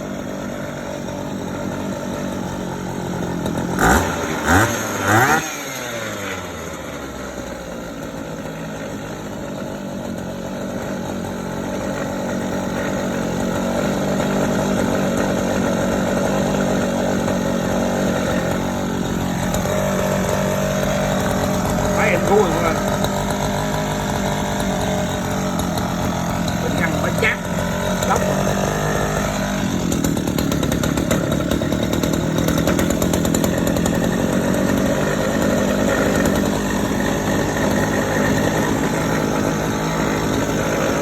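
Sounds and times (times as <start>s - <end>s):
small two-stroke engine running: 0.0s - 41.0s
engine throttle blips: 19.4s - 41.0s.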